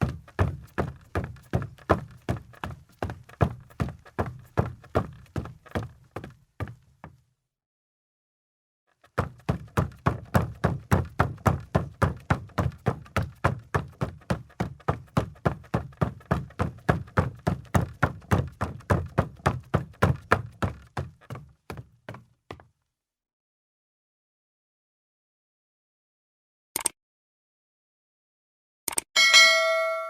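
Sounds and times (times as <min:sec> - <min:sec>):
footsteps on wooden floor: 0:00.0 - 0:07.2.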